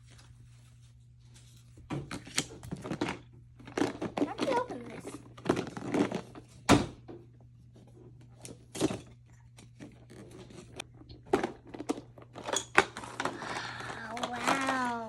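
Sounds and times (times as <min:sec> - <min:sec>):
packaging crinkling: 0:02.2 - 0:06.5.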